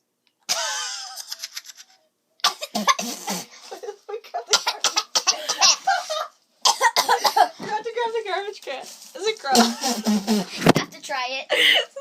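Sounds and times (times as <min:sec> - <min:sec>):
girls coughing: 0:02.5 - 0:03.6, 0:04.4 - 0:07.6, 0:09.5 - 0:10.7
girls laughing: 0:03.6 - 0:06.4, 0:11.5 - 0:12.0.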